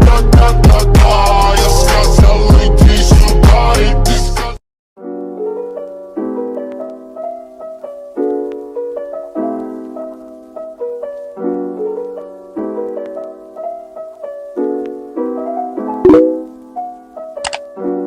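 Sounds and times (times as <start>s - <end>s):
piano-like keyboard chords: 5.0s - 18.0s.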